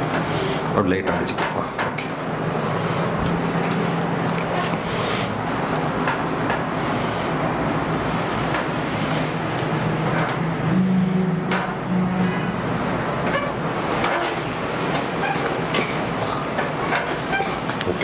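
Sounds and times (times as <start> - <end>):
traffic-like rumble and hiss: 0.0 - 18.0
high-pitched squeal: 7.3 - 18.0.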